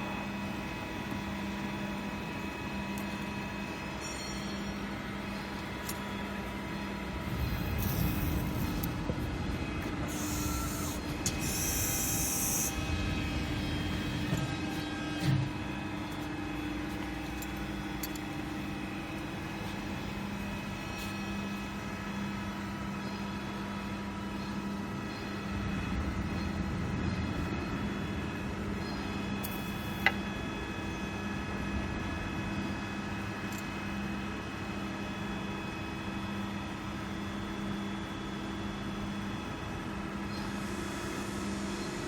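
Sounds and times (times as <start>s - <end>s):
hydraulic drive humming: 6.8s - 16.3s.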